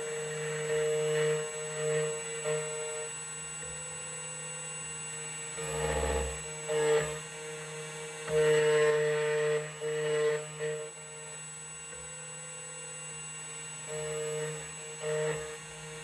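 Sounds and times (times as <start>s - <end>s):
key cutting machine humming: 0.0s - 16.0s
motor whirring: 5.5s - 11.4s.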